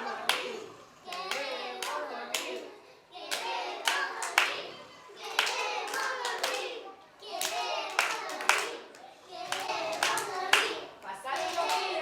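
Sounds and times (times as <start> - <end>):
sharp hand claps: 5.3 - 6.7, 7.4 - 10.8.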